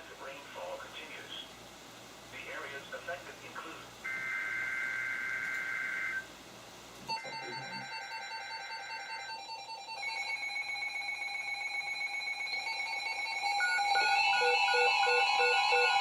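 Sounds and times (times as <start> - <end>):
weather radio alarm tones: 4.0 - 6.3, 7.1 - 16.0
rapid alarm beeping: 4.1 - 6.3, 7.1 - 16.0.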